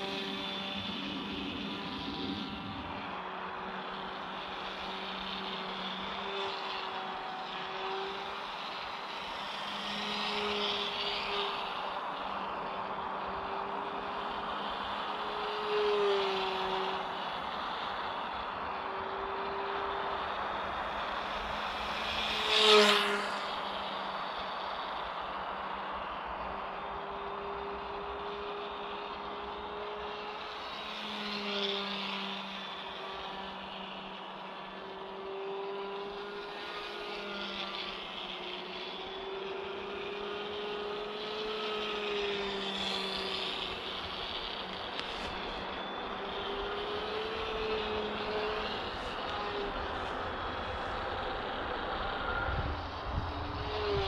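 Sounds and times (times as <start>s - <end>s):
electric model plane buzzing: 0.0s - 54.0s
electric motor propeller whine: 0.0s - 54.0s.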